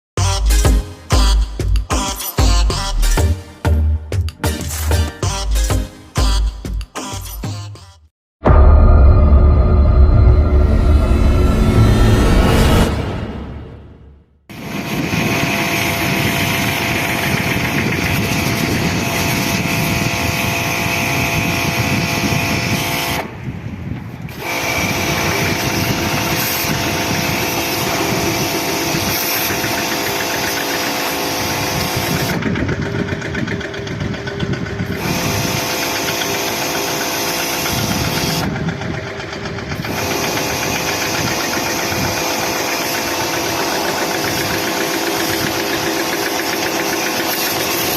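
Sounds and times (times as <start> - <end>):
pressure washer engine running: 24.4 - 47.9.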